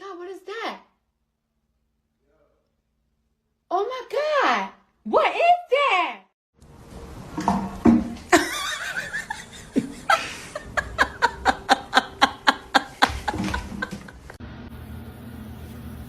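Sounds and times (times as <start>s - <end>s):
people laughing: 8.4s - 14.4s.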